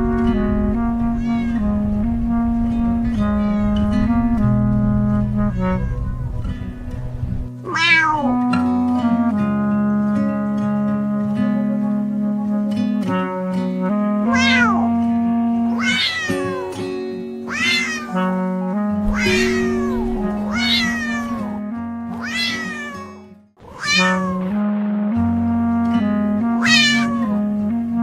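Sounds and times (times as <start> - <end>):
background music with held notes: 0.0 - 23.4, 24.0 - 28.0
cat meowing: 1.0 - 2.1, 3.0 - 4.0, 5.4 - 6.8, 7.6 - 8.4, 14.3 - 14.9, 15.7 - 21.6, 22.2 - 24.5, 26.6 - 27.4.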